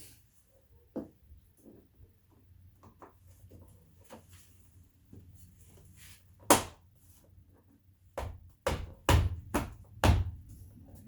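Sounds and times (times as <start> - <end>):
sharp knock on car door trim: 8.2 - 10.4.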